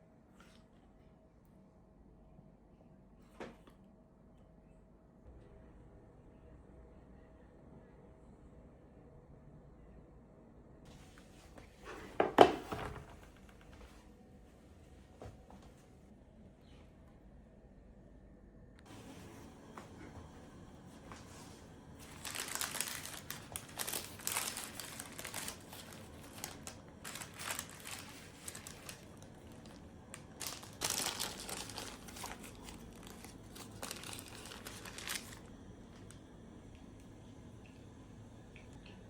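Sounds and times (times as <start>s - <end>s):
crinkly packaging crumpling: 20.9s - 36.2s.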